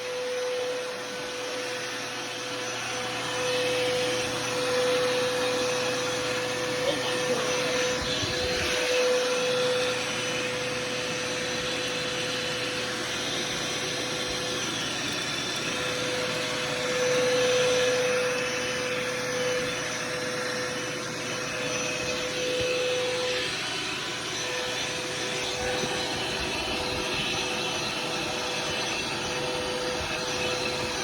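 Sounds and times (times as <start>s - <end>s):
vacuum cleaner whining: 0.0s - 31.0s.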